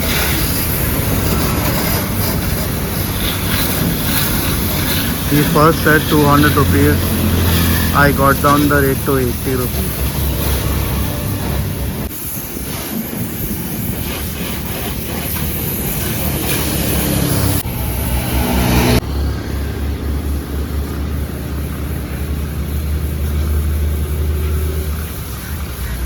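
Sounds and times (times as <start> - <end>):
pressure washer water spray hiss: 0.0 - 18.8.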